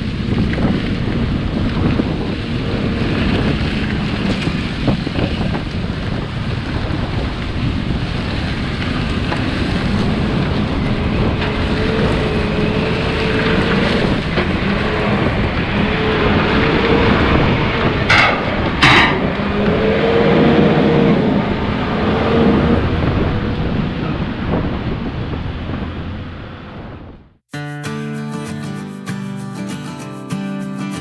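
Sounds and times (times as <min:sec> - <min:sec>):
vehicle rumble: 0:00.0 - 0:27.4
wind buffeting microphone: 0:00.0 - 0:27.4.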